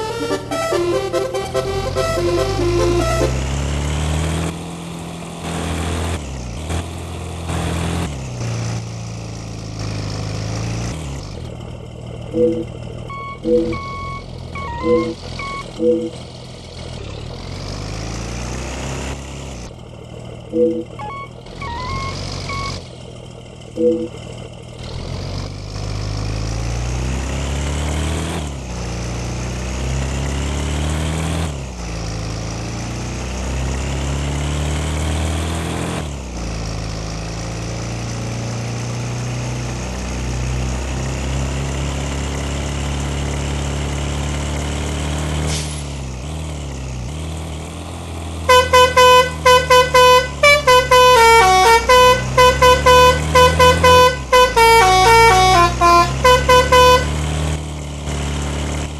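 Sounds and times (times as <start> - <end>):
multi-tone horn tune: 0.0 - 3.5, 48.5 - 57.2
bus engine accelerating: 0.0 - 58.9.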